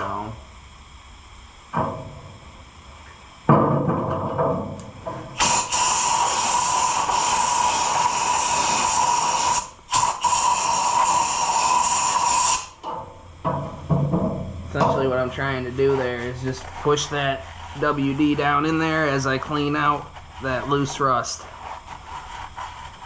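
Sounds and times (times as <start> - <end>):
aerosol can spraying: 5.4 - 12.8.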